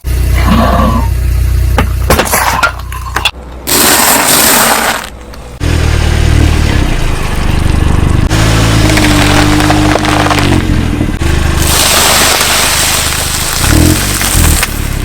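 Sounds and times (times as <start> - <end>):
car engine humming: 0.0 - 3.8, 4.4 - 15.0
objects crunching under tyres: 1.8 - 15.0
loud hiss: 11.6 - 14.0.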